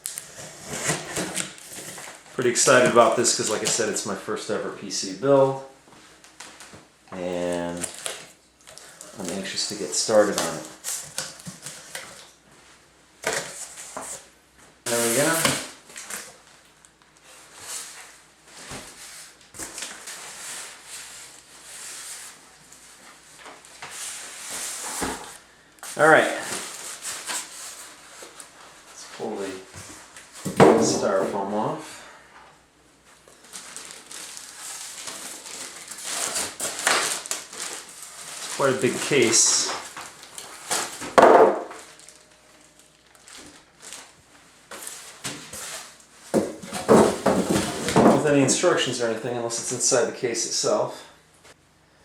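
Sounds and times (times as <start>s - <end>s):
styrofoam and cardboard handled: 9.0s - 12.0s, 14.9s - 16.3s, 33.4s - 49.0s.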